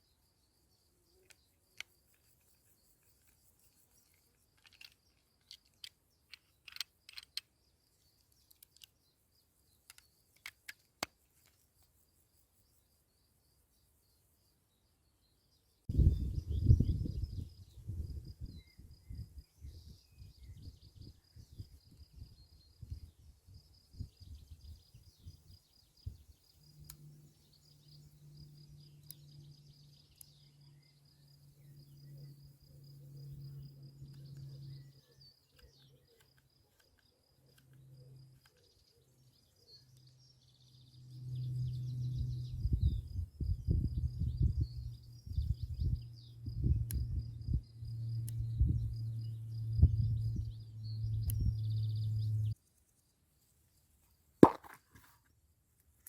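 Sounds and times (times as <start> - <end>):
insects chirping: 0.0 - 55.3
sharp clicks: 4.0 - 9.0
steady low hum: 40.8 - 52.6.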